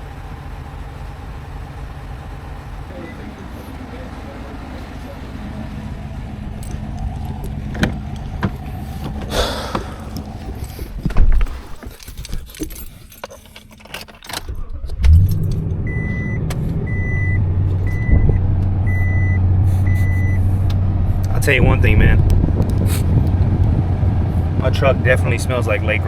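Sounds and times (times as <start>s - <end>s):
truck engine starting and running: 0.0s - 26.0s
keys jingling: 10.0s - 15.6s.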